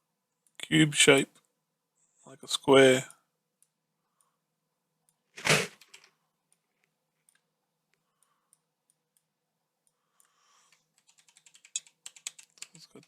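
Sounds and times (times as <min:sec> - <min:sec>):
computer mouse clicks: 0:08.2 - 0:13.0.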